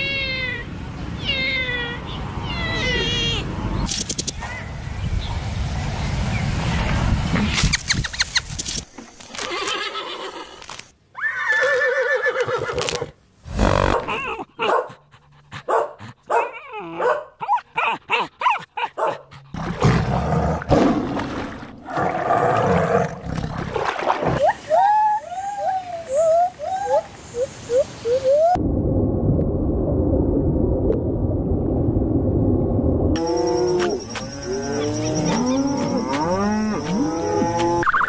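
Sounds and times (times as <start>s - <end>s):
animal calls: 33.2s - 38.0s.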